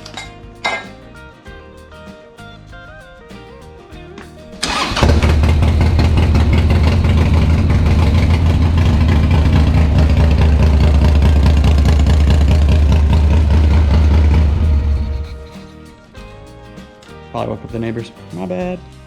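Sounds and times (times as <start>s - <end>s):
motorcycle engine starting and idling: 4.6s - 15.7s.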